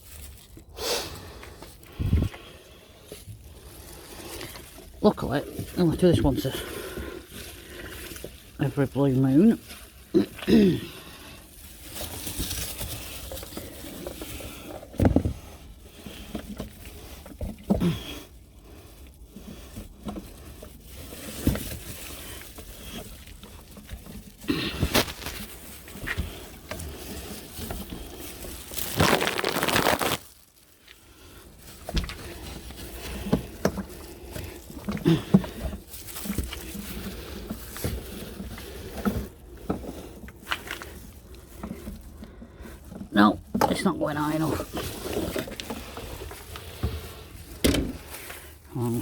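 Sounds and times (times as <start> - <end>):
can and hose knocks and scrapes: 14.2 - 15.5.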